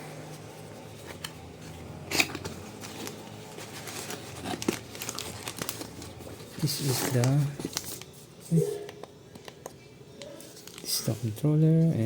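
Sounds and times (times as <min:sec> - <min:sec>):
packaging rustling: 0:01.0 - 0:08.4, 0:10.3 - 0:11.2.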